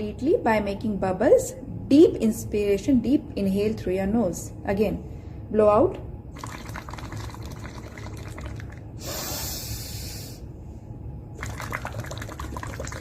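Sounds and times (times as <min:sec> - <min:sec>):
bubbling through a straw in water: 0:06.3 - 0:09.0, 0:11.3 - 0:13.0
hissing breath: 0:09.0 - 0:10.5.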